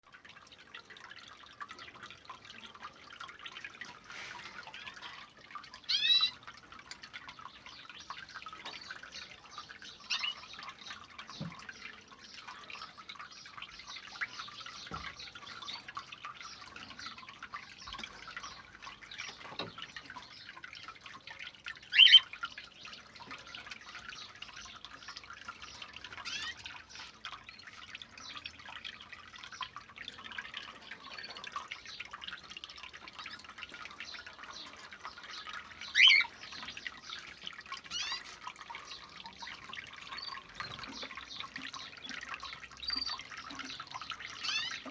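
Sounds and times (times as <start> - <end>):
water dripping and trickling: 0.0 - 44.9
bird chirping: 7.9 - 12.0, 21.9 - 22.3, 34.0 - 37.3, 42.8 - 44.9.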